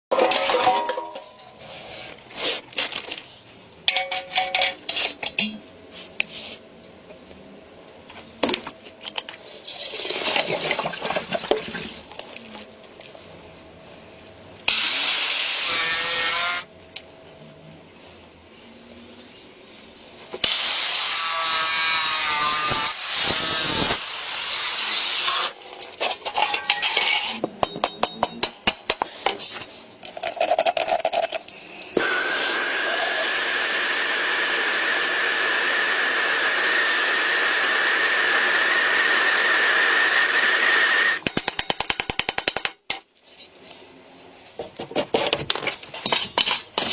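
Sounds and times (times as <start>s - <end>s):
power tool running: 32.0s - 41.2s.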